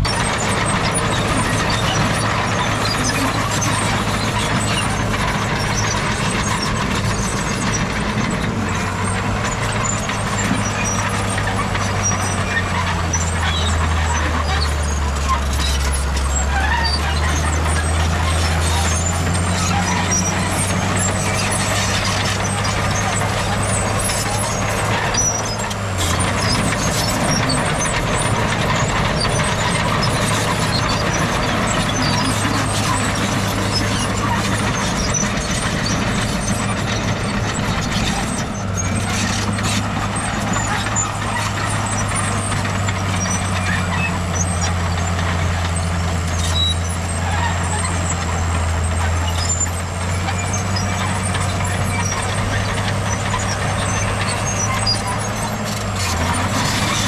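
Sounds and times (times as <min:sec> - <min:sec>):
diesel machinery engine hum: 0:00.0 - 0:57.0.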